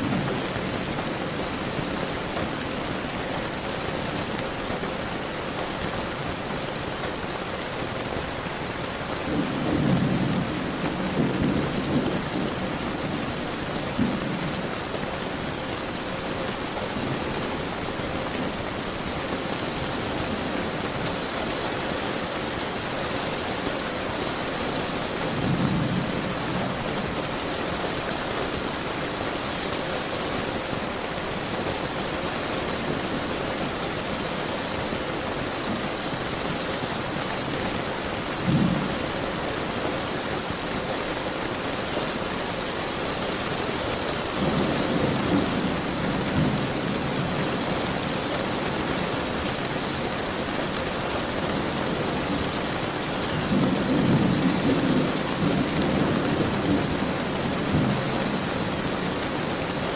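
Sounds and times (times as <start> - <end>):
steady rain: 0.0 - 59.9
thunder rumbling: 9.0 - 21.3, 24.1 - 29.7.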